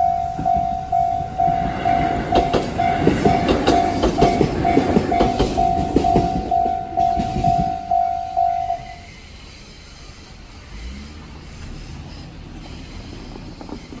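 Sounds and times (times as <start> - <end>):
level crossing warning bell ringing: 0.0 - 9.2
train wheels clattering: 0.0 - 10.2, 12.6 - 14.0.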